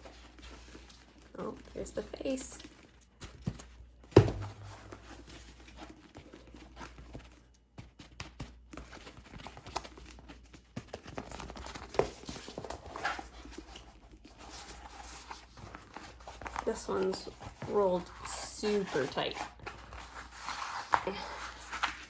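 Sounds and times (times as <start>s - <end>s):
thump: 4.2s - 5.0s.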